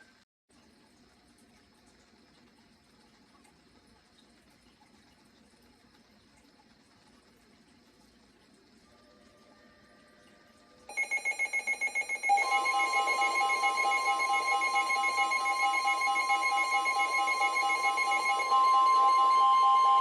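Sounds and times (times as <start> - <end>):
rapid electronic beeping: 10.9 - 20.0
steady high alarm tone: 10.9 - 20.0.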